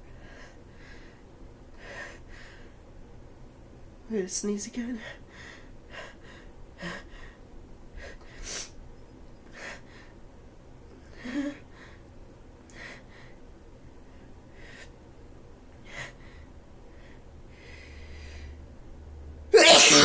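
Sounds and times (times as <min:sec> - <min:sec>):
woman sneezing: 0:19.6 - 0:20.0.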